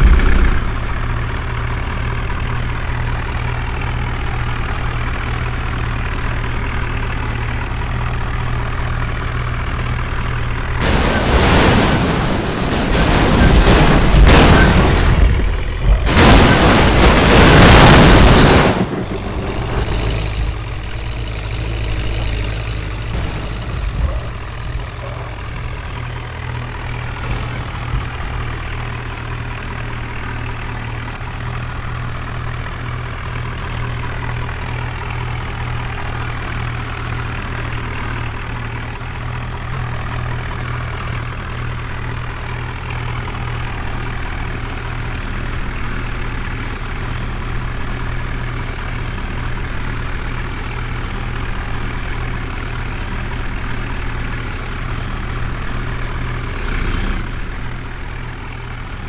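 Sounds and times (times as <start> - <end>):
very loud noise: 0.0 - 1.4, 10.8 - 21.5
diesel engine idling: 0.0 - 59.0.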